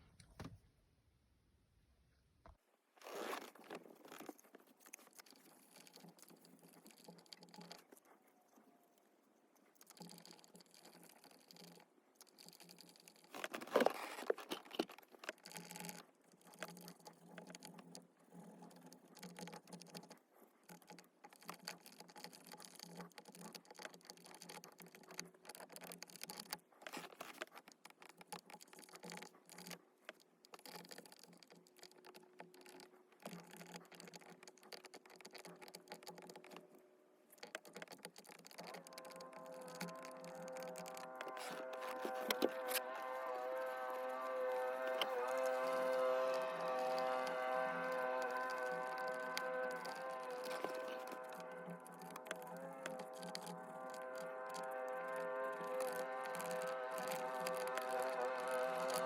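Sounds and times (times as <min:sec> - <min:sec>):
cotton swab scrubbing plastic: 0:03.0 - 0:59.0.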